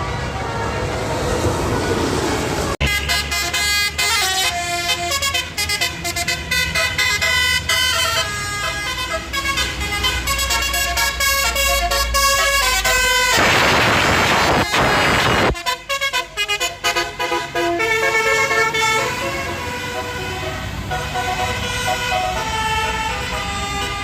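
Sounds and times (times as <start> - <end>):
loud rush of noise: 0.0 - 2.9, 13.2 - 15.6
engine rumble: 0.0 - 15.6
musical bus horn playing a tune: 2.8 - 24.0.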